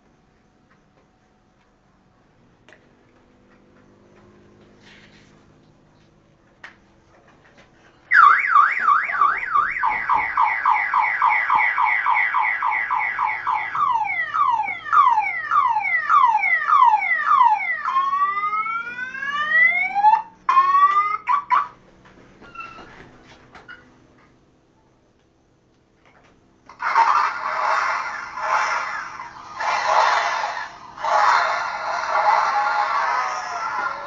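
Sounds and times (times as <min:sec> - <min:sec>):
scooter alarm siren: 0:08.1 - 0:21.8, 0:26.7 - 0:34.0.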